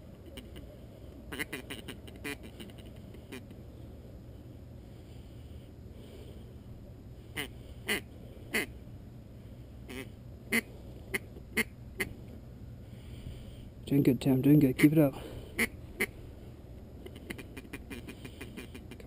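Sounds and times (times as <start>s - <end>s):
duck call quacks: 0.3s - 0.6s, 1.3s - 3.5s, 7.4s - 8.7s, 9.9s - 12.1s, 15.6s - 16.1s, 17.0s - 19.0s.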